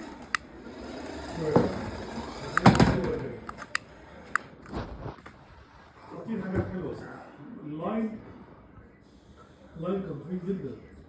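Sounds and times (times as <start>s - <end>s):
plastic toys clicking and knocking: 0.0s - 3.8s.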